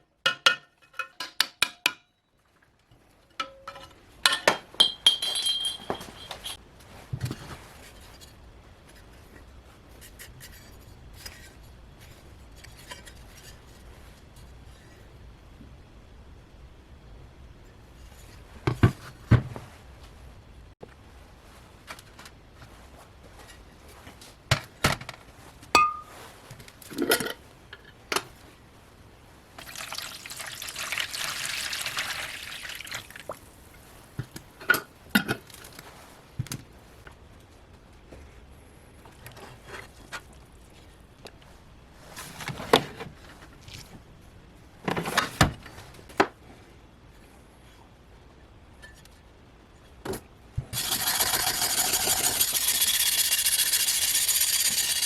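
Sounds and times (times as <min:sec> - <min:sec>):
knocks and clinks of objects: 0:03.3 - 0:06.6
liquid pouring: 0:29.6 - 0:33.4.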